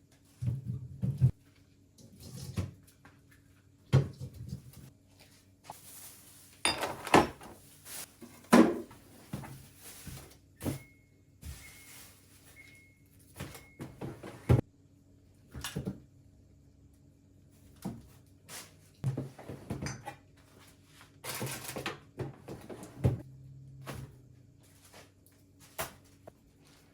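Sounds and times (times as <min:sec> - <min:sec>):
plastic rustling: 0:05.1 - 0:10.9, 0:11.5 - 0:13.5
containers knocking on fridge shelves: 0:08.3 - 0:09.6.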